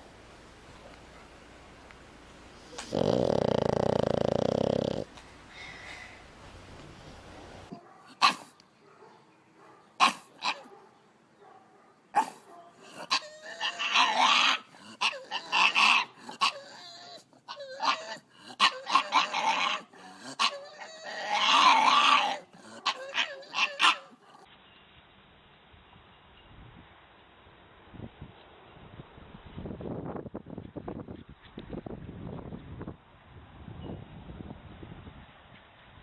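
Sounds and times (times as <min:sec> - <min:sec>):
dog barking: 0:07.7 - 0:13.2
dog howling and yapping: 0:12.2 - 0:24.5.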